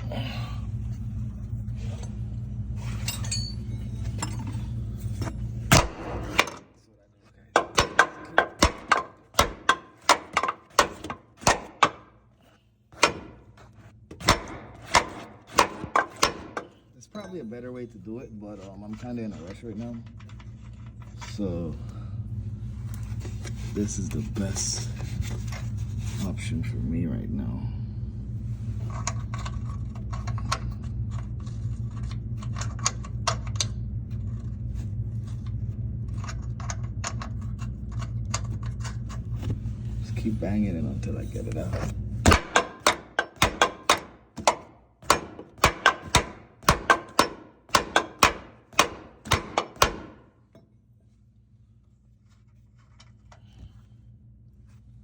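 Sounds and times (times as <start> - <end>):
steady low hum: 0.0 - 55.0
hammer banging on metal: 7.6 - 12.1, 14.2 - 16.8, 42.3 - 50.2.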